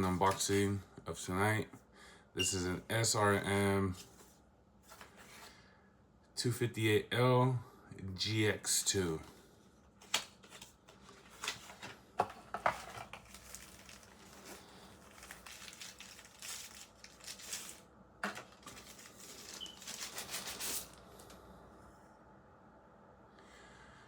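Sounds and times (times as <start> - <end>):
packaging crinkling and rustling: 9.9 - 21.4.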